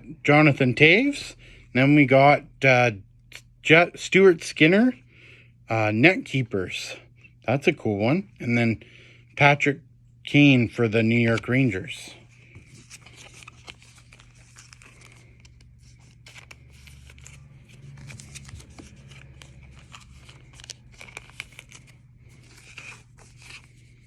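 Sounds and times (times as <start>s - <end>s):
faint steady hum: 0.0s - 24.0s
cards clicking and rustling: 12.4s - 24.0s
foil wrapper tearing and crinkling: 16.1s - 22.1s.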